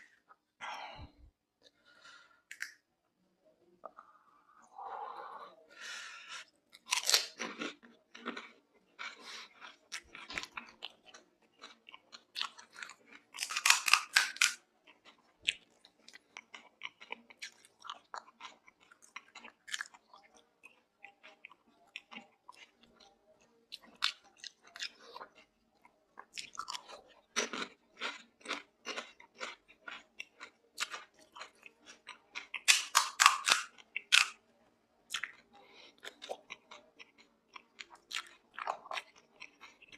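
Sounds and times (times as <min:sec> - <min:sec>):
crisp shells crunched and chewed: 0:06.8 - 0:20.0, 0:26.4 - 0:34.4.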